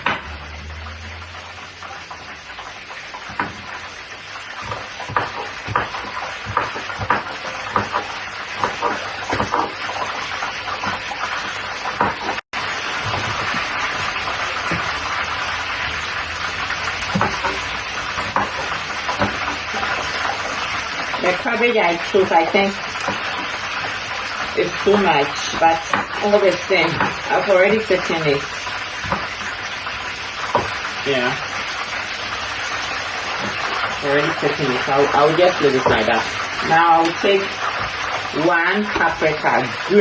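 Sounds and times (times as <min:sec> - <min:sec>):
knife chopping cabbage on board: 0:04.6 - 0:09.8.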